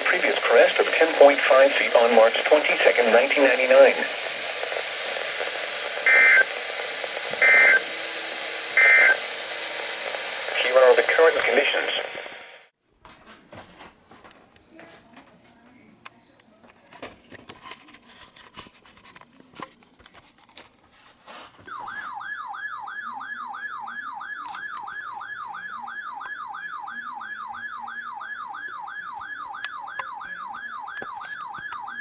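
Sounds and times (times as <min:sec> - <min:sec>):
faint radio static: 0:00.0 - 0:12.7, 0:14.6 - 0:20.7, 0:21.6 - 0:32.0
warbling electronic siren alarm: 0:21.7 - 0:32.0.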